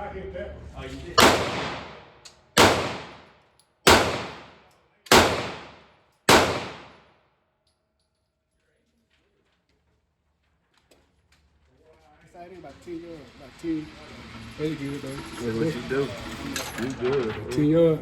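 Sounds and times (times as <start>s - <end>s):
pistol shots with echo: 1.2s - 3.3s, 3.9s - 7.0s.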